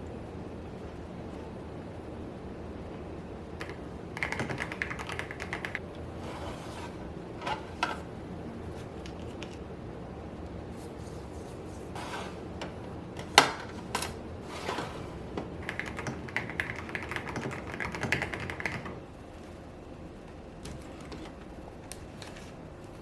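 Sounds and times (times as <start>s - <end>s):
mechanical keyboard typing: 3.6s - 5.8s, 15.6s - 19.0s.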